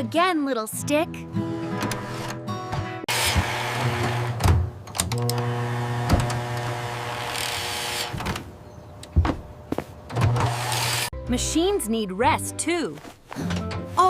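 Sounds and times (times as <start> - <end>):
electric motor humming: 3.1 - 8.2, 10.4 - 11.1.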